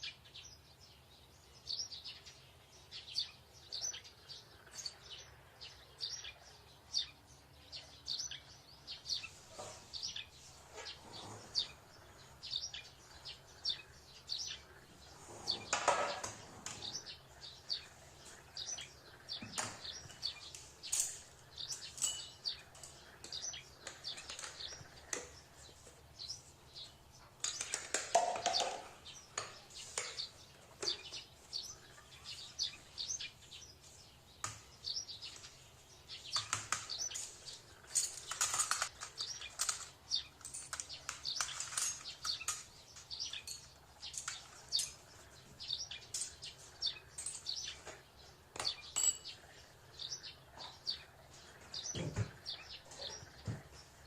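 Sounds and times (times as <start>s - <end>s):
small birds chirping: 0.0s - 54.0s
kitchen utensils clinking: 19.6s - 25.4s, 36.4s - 45.1s, 46.0s - 48.0s, 48.6s - 49.5s.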